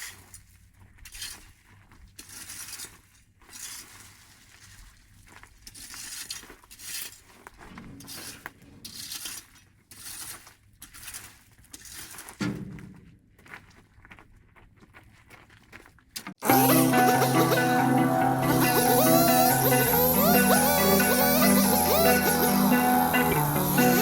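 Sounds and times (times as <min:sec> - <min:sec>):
rustling and scraping: 0:06.8 - 0:13.6.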